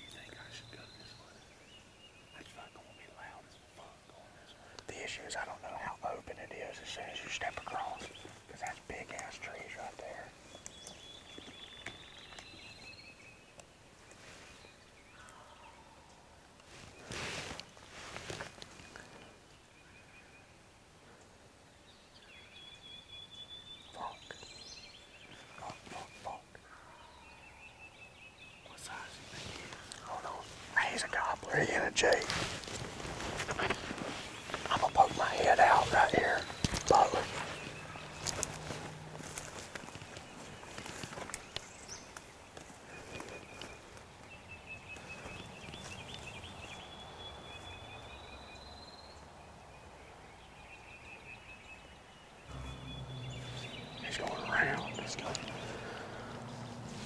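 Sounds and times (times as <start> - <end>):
wild birds chirping and whistling: 0.0 - 57.0
faint low rumble: 28.8 - 41.5, 52.5 - 57.0
high whistled bird song: 50.4 - 56.2.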